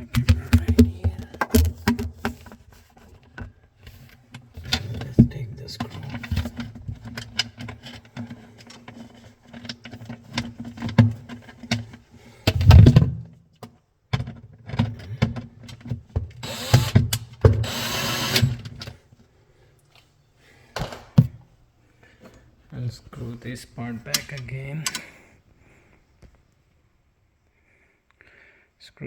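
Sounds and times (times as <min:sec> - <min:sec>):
power screwdriver whirring: 0:16.4 - 0:18.6.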